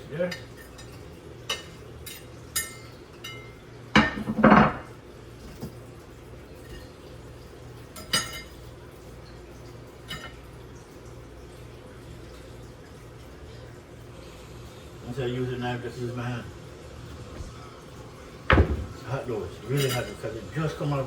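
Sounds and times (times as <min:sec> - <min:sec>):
dishes clattering: 0:00.2 - 0:05.8, 0:07.9 - 0:08.7, 0:10.0 - 0:10.5, 0:18.4 - 0:20.2
dishes clinking: 0:00.2 - 0:05.8, 0:06.5 - 0:07.1, 0:07.8 - 0:08.8, 0:09.9 - 0:10.5, 0:18.4 - 0:20.8.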